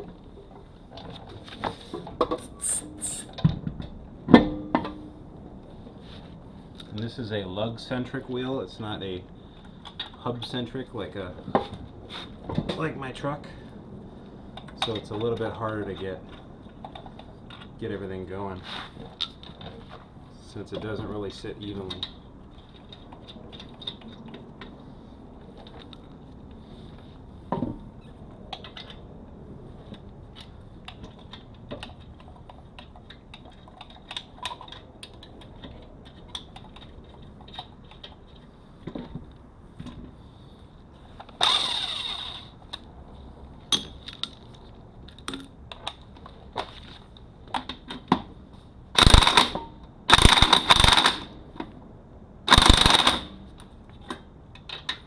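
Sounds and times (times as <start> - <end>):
impact wrench spinning: 41.4 - 42.5, 49.0 - 51.3, 52.5 - 53.3.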